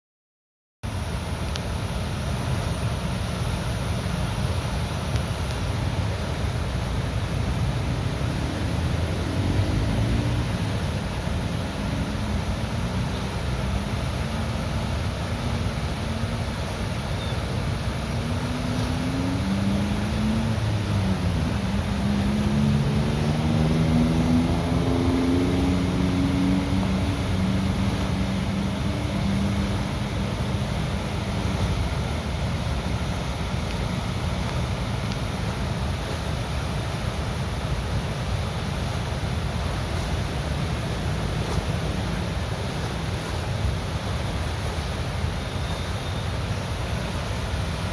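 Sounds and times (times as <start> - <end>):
water rushing from dam gates: 0.9 - 47.9
faint traffic engine: 1.0 - 47.9
passing vehicle engine: 8.3 - 13.0, 18.1 - 34.9.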